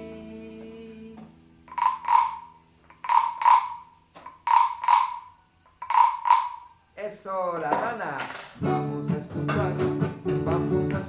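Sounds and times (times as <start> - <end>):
wooden frog rasp croaks: 1.7 - 6.8.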